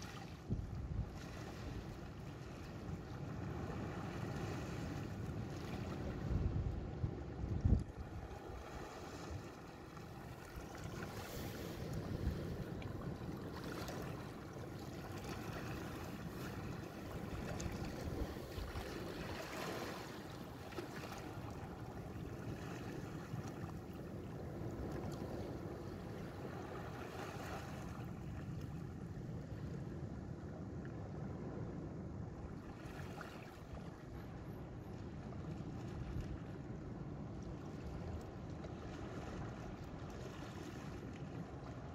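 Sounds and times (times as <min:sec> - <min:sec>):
waves washing onto beach: 0:00.0 - 0:30.0
wind buffeting microphone: 0:00.3 - 0:02.2, 0:02.8 - 0:32.6.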